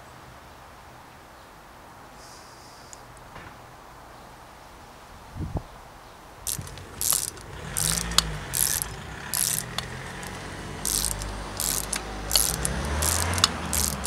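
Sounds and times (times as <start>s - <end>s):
hand ratchet clicking: 6.5s - 14.0s.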